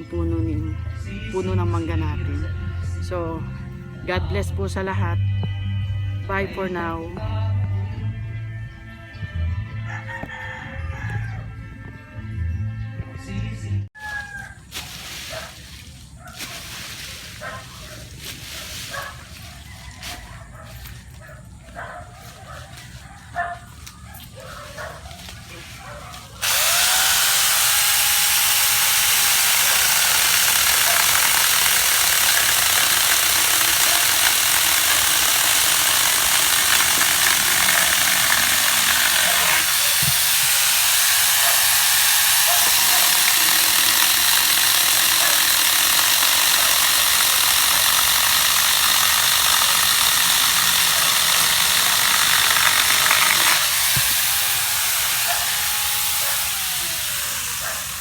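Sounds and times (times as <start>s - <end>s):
chainsaw cutting wood: 25.2s - 58.0s.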